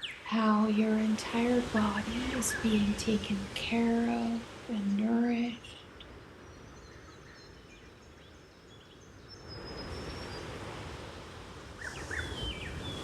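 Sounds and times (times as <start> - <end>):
ocean waves washing: 0.0 - 6.7, 9.5 - 13.0
birds chirping: 0.0 - 10.6, 11.8 - 13.0.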